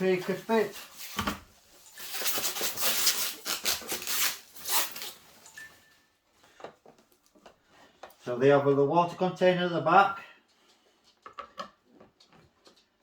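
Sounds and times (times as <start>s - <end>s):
packaging rustling and crinkling: 0.0s - 5.6s.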